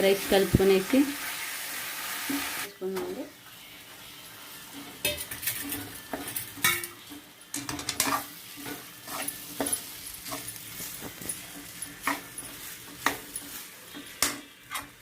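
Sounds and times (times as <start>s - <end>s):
light sizzle: 0.0s - 15.0s
spatula scraping and clinking pan: 4.8s - 15.0s.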